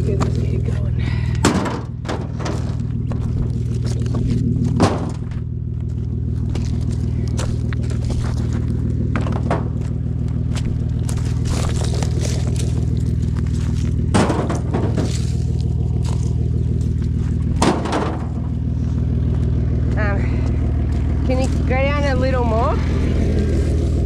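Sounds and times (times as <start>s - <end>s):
vehicle engine running: 0.0s - 24.0s
loud clattering knocks: 1.4s - 3.6s, 4.7s - 5.4s, 8.5s - 10.0s, 14.0s - 15.4s, 17.5s - 18.6s.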